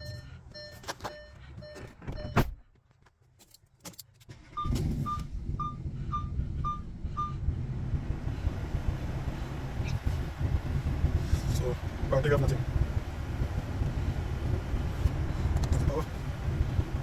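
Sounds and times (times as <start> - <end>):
car warning chime: 0.0 - 2.5, 4.5 - 7.4
short warning beeps: 0.0 - 2.5, 4.6 - 7.4
car engine starting and running: 0.0 - 3.0, 3.8 - 17.0.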